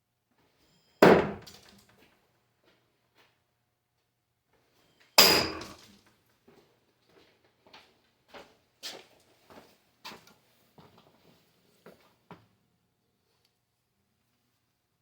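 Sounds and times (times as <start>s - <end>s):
knife striking target: 5.2s - 5.8s.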